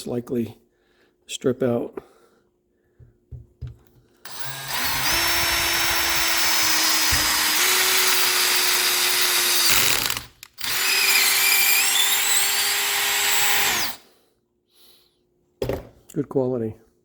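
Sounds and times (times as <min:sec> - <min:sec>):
power drill driving screw into wood: 0:04.3 - 0:14.0.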